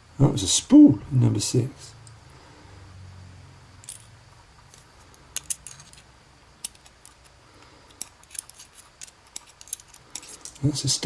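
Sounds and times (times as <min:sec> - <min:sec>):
metal lock pins clicking: 0:04.7 - 0:10.7.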